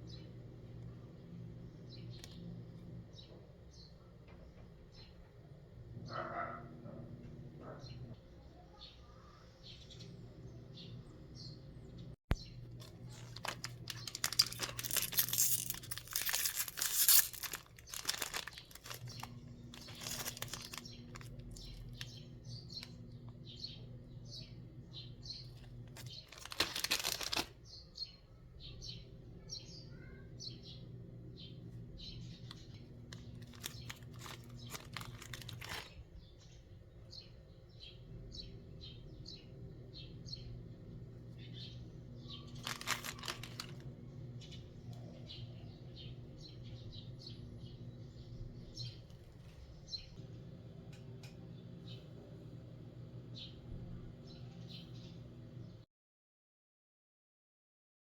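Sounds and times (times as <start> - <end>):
small birds chirping: 7.6 - 52.4, 53.3 - 55.8
packaging tearing and crinkling: 12.7 - 22.1, 25.9 - 27.6, 33.2 - 36.0, 42.5 - 43.9.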